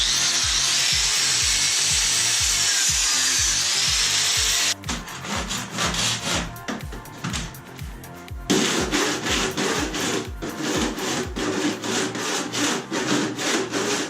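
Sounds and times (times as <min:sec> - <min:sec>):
power tool high-pitched hiss: 0:00.0 - 0:04.8
music with low beat: 0:00.0 - 0:14.0
scraping strokes: 0:04.2 - 0:07.8, 0:08.5 - 0:14.0.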